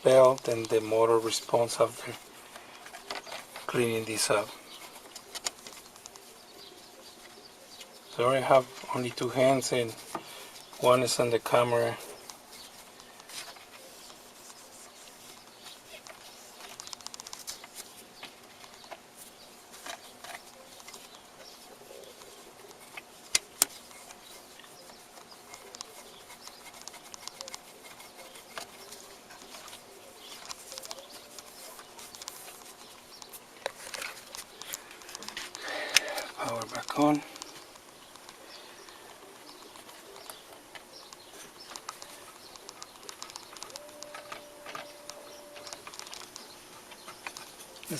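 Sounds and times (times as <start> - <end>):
faint steady hum: 0.0 - 47.9
hands clicking and rubbing mechanism: 0.0 - 47.9
sharp clicks: 32.1 - 47.5.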